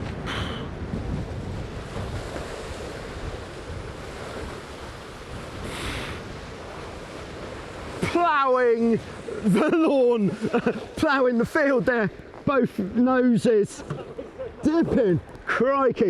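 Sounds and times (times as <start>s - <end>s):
wind buffeting microphone: 0.0s - 12.7s
water rushing past hulls: 0.0s - 16.0s
spray hiss: 5.6s - 6.2s.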